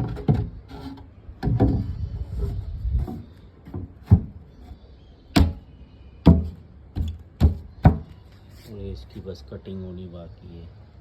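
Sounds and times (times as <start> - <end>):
wood knocking on wood: 6.3 - 8.1.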